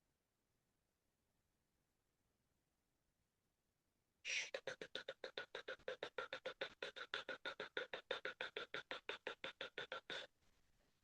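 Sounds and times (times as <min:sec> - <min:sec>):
person making mouth clicks: 0:04.3 - 0:10.3.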